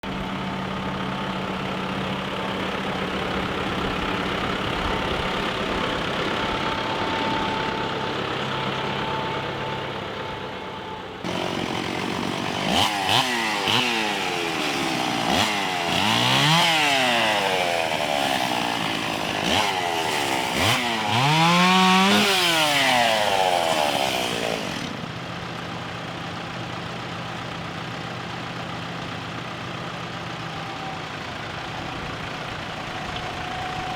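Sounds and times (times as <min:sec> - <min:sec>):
chainsaw engine revving: 0:11.2 - 0:25.1.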